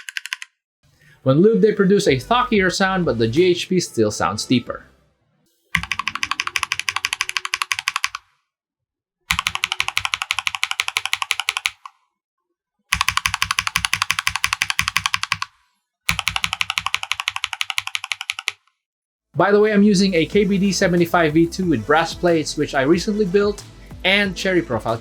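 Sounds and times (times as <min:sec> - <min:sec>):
fast mechanical keyboard typing: 0:00.0 - 0:00.5, 0:05.8 - 0:08.2, 0:09.3 - 0:11.9, 0:12.9 - 0:15.5, 0:16.1 - 0:18.6.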